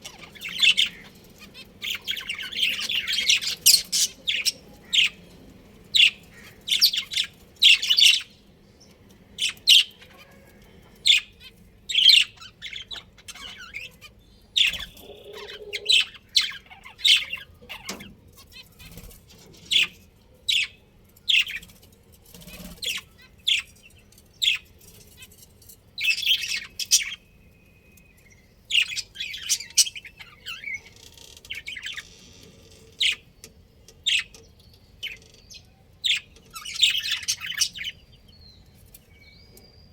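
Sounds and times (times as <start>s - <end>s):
budgerigars chirping: 0.0s - 5.3s, 9.4s - 19.1s, 28.7s - 32.2s, 36.0s - 38.0s.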